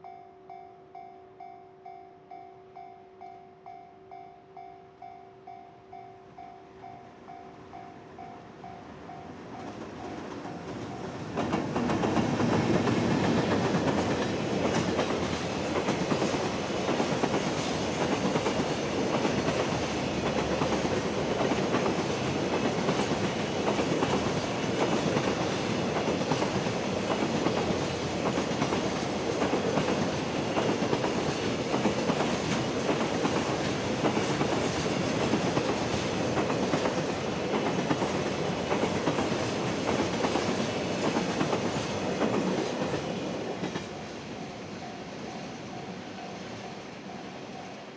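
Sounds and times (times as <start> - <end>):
train wheels clattering: 8.8 - 44.7.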